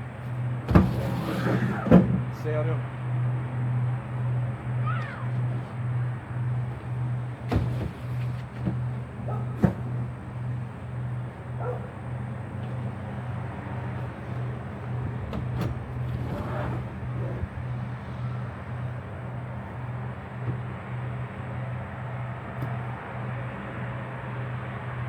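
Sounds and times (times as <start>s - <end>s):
pulsing mechanical hum: 0.0s - 25.0s.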